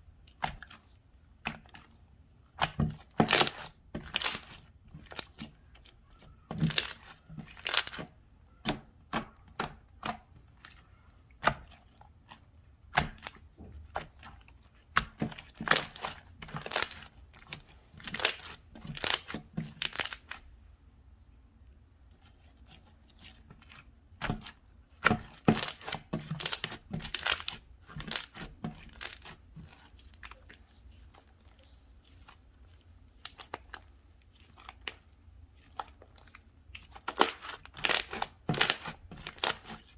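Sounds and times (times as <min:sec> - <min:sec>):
slime crackling and tearing: 0:02.6 - 0:08.0, 0:15.5 - 0:20.4, 0:23.6 - 0:31.0, 0:31.6 - 0:39.9.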